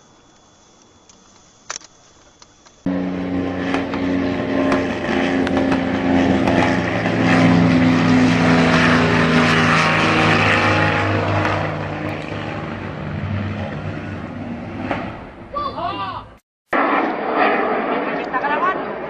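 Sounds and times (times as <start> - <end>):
propeller aircraft engine running: 2.8 - 15.5.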